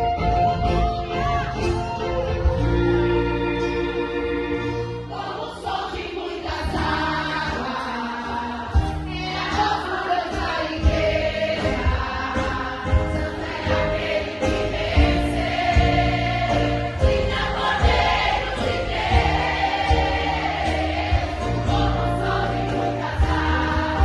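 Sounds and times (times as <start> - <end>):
band playing: 0.0 - 24.0
voices singing: 5.1 - 24.0.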